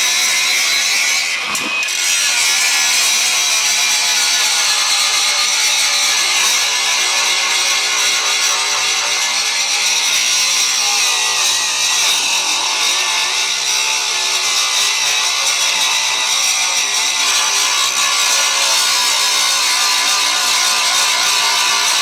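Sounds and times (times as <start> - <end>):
angle grinder grinding steel: 0.0 - 2.8.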